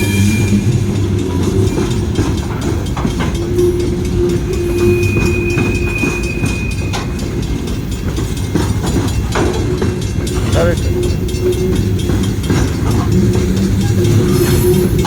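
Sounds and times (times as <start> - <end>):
high whine from wheels: 0.0 - 8.6
freight train wheels clicking: 0.0 - 15.0.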